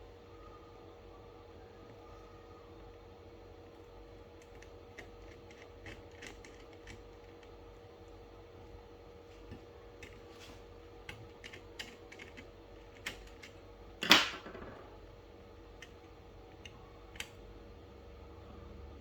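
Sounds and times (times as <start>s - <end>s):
small clicks and taps of tools: 4.4s - 7.6s, 9.4s - 10.3s, 11.0s - 14.5s, 15.8s - 17.4s.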